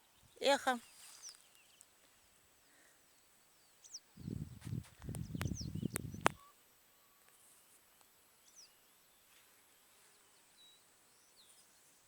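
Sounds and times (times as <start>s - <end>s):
faint high bird chirps: 2.6s - 7.4s.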